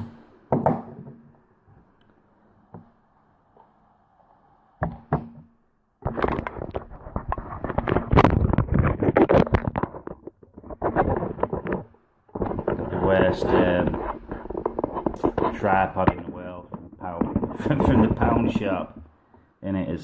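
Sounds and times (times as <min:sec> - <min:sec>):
handling knocks and clicks: 0:04.8 - 0:19.1
rubbing and clattering: 0:06.0 - 0:19.2.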